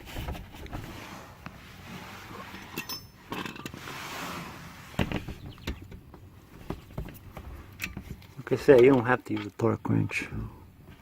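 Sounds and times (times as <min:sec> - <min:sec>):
hand tools clinking: 0:02.5 - 0:03.8
metallic ring: 0:02.7 - 0:03.7.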